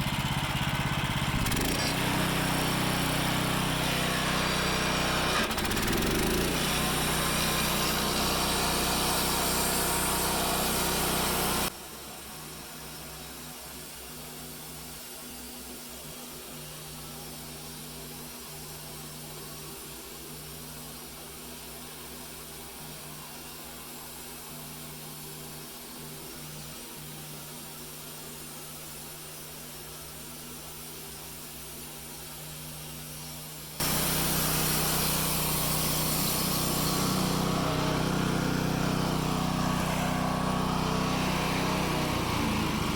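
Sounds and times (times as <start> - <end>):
band sawmill cutting a log: 0.0 - 11.7, 33.8 - 42.9.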